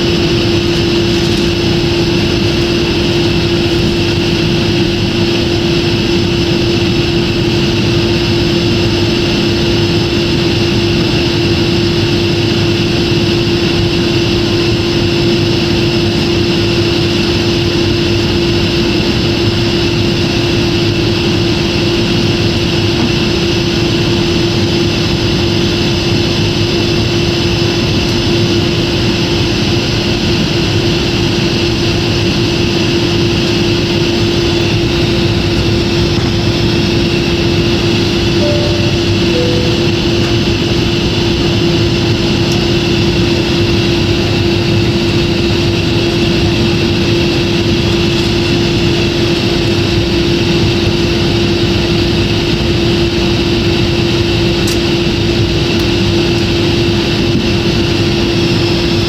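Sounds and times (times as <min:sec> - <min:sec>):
constant hum: 0:00.0 - 0:25.9
jet airliner cabin drone: 0:00.0 - 0:59.0.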